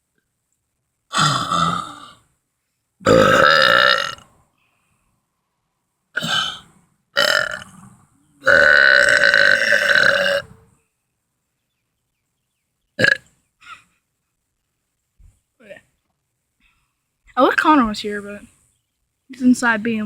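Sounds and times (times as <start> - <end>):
man burping loudly: 1.1 - 2.2, 3.0 - 4.3, 6.2 - 10.6, 13.0 - 13.8.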